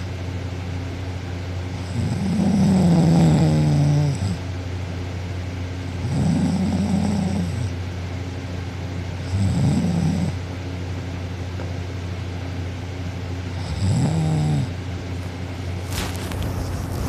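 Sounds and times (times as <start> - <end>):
steady low hum: 0.0 - 17.0
girl snoring: 1.8 - 4.4, 6.0 - 7.7, 9.3 - 10.4, 13.6 - 14.8.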